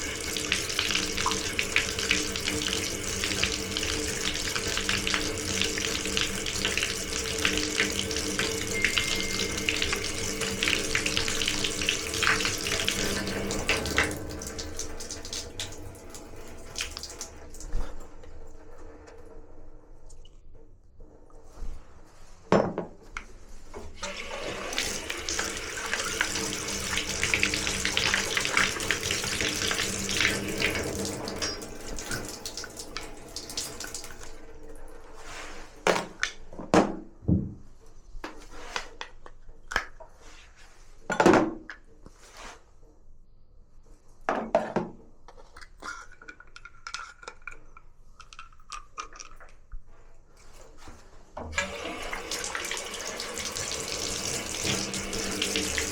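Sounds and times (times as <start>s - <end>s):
water running from a tap: 0.0s - 17.8s, 24.0s - 35.0s, 51.5s - 55.9s.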